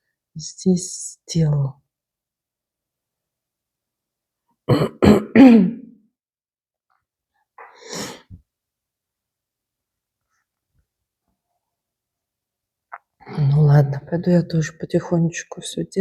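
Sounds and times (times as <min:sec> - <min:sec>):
woman coughing: 0:04.7 - 0:06.0.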